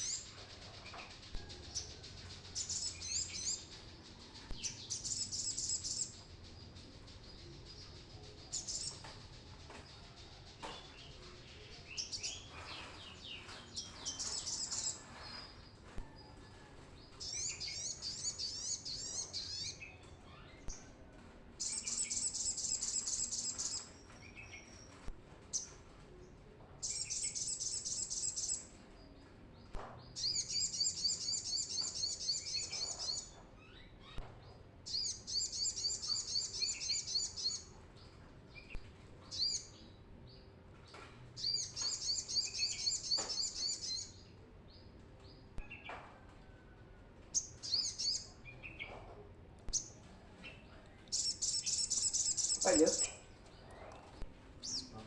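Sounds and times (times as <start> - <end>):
bird twittering song: 0.0 - 15.0, 21.6 - 25.8, 26.8 - 44.3, 47.4 - 48.9, 49.7 - 55.0.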